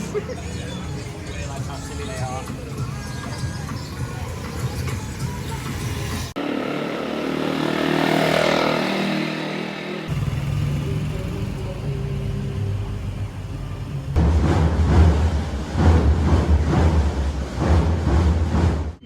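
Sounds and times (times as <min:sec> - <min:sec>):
road noise: 0:00.0 - 0:19.0
vehicle engine: 0:04.2 - 0:19.0.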